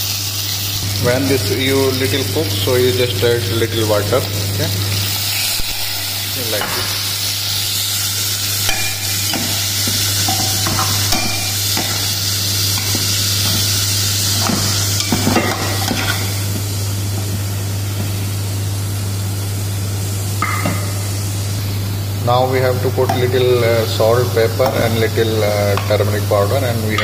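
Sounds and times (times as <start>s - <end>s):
chicken sizzling in hot oil: 0.0s - 27.0s
spoon scraping a pan: 8.6s - 16.4s.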